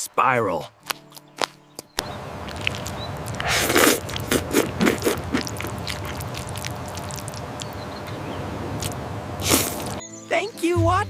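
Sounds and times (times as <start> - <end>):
short crunches: 0.8 - 8.1, 8.7 - 10.0.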